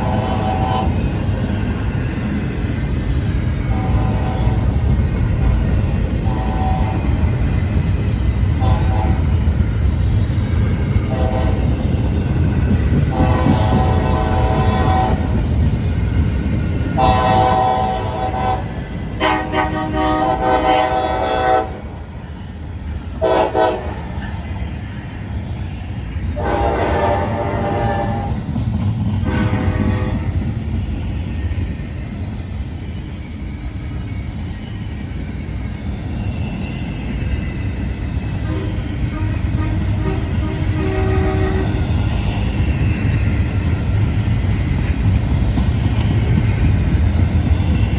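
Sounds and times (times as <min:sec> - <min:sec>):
locomotive air horn blasts: 0:00.0 - 0:01.0, 0:03.7 - 0:04.6, 0:06.2 - 0:07.2, 0:08.6 - 0:09.3, 0:11.1 - 0:11.8, 0:13.1 - 0:15.3, 0:17.0 - 0:21.9, 0:23.2 - 0:24.0, 0:26.4 - 0:28.4, 0:29.2 - 0:30.3, 0:38.4 - 0:42.0
diesel engines and train rumble: 0:00.0 - 0:47.9.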